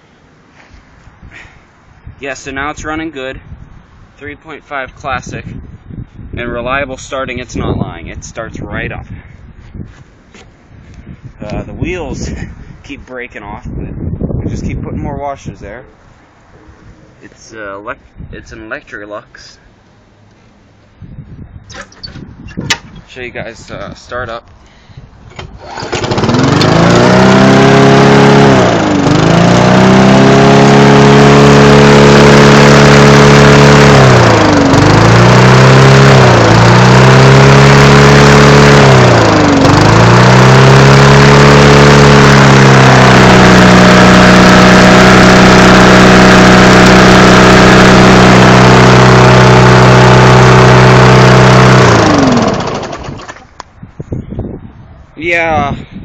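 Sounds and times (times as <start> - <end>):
lawnmower engine running: 25.4 - 53.6.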